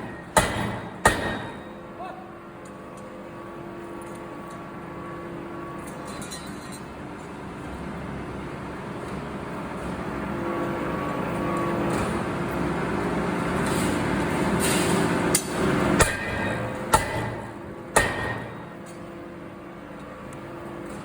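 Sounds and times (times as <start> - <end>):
factory machinery noise: 0.0 - 21.0.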